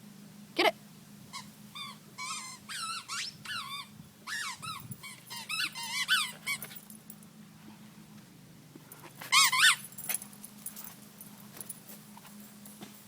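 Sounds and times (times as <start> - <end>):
squeaky dog toy squeaking: 1.4 - 6.7, 9.3 - 9.8.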